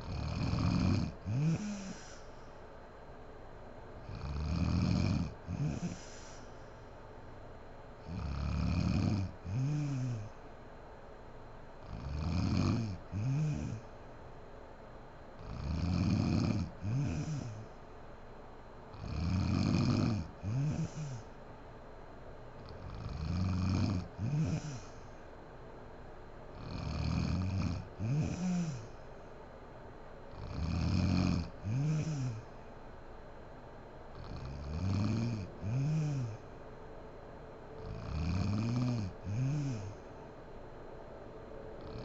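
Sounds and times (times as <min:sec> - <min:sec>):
woman snoring: 0:00.0 - 0:02.3, 0:04.0 - 0:06.4, 0:08.0 - 0:10.4, 0:11.8 - 0:13.9, 0:15.4 - 0:17.7, 0:18.9 - 0:21.3, 0:22.6 - 0:25.1, 0:26.6 - 0:29.0, 0:30.3 - 0:32.6, 0:34.2 - 0:36.5, 0:37.8 - 0:40.1, 0:41.8 - 0:42.0.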